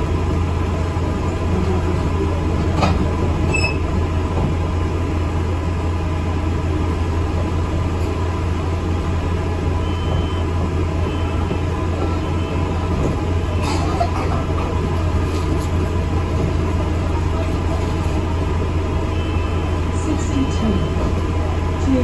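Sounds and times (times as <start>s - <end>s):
bus engine drone: 0.0s - 22.0s
road noise: 0.0s - 22.0s.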